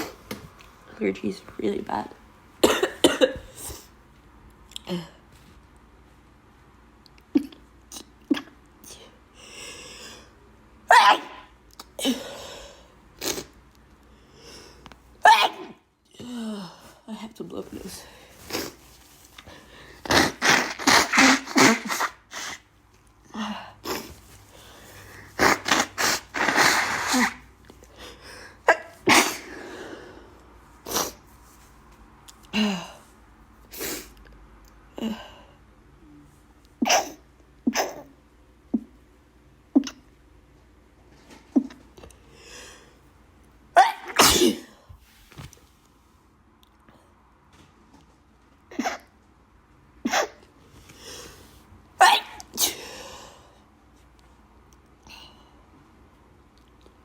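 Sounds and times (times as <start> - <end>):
person sneezing loudly: 10.9 - 12.4, 15.2 - 15.8, 20.0 - 22.7, 25.3 - 27.5, 28.7 - 29.7, 36.8 - 38.1, 43.8 - 44.8, 50.0 - 50.4, 52.0 - 53.0
woman blowing her nose: 18.4 - 19.0, 19.9 - 22.7, 25.1 - 27.5, 28.9 - 29.8.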